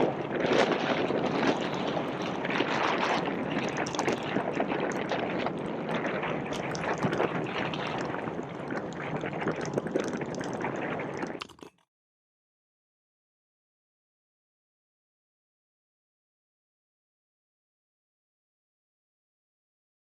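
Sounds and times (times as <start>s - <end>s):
wind rushing over microphone: 0.0s - 11.4s.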